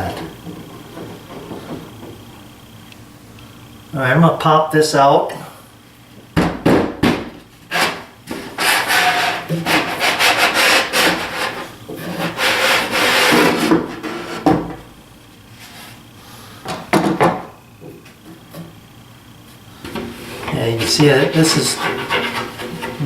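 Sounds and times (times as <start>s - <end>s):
wood scraping against wood: 7.7s - 14.6s, 19.8s - 23.0s.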